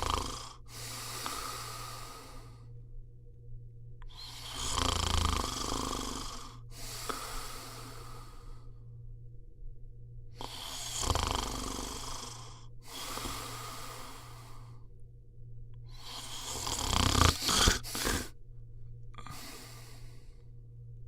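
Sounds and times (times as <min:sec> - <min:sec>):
person snoring: 0:00.0 - 0:02.7, 0:04.0 - 0:08.8, 0:10.3 - 0:14.9, 0:15.9 - 0:18.4, 0:19.2 - 0:20.5.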